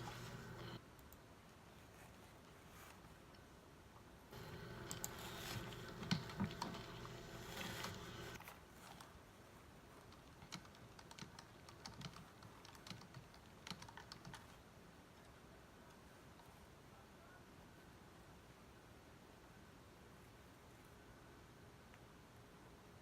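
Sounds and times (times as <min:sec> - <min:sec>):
faint steady hum: 0:00.0 - 0:23.0
typing on computer keyboard: 0:10.1 - 0:14.6.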